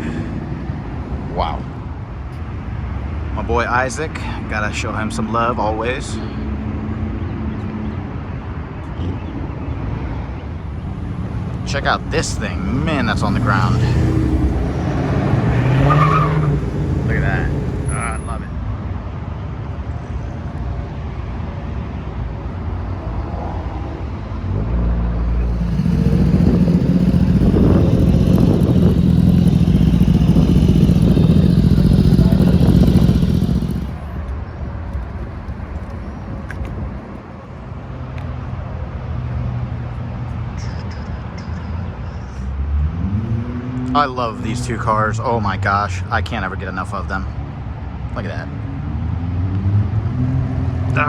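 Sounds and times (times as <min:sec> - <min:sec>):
vehicle engine droning: 0:10.3 - 0:18.5, 0:24.5 - 0:37.9.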